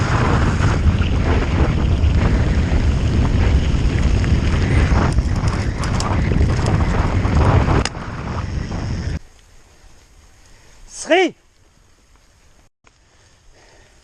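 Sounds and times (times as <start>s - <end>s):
wind buffeting microphone: 0.0s - 9.2s
bike rattling clicks: 1.3s - 8.1s.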